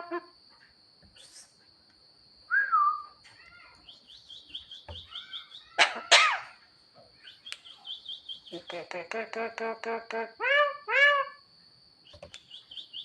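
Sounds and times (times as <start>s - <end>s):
myna bird calling: 3.6s - 11.4s, 12.0s - 13.0s.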